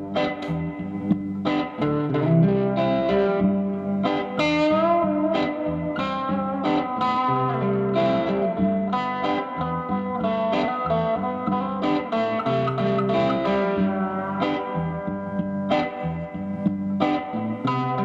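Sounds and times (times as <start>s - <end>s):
electric guitar notes and chords: 0.0s - 18.0s.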